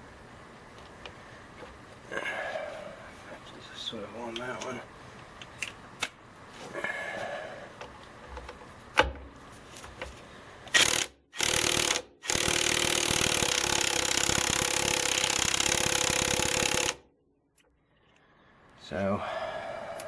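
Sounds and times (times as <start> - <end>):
impact wrench hammering: 10.7 - 17.0.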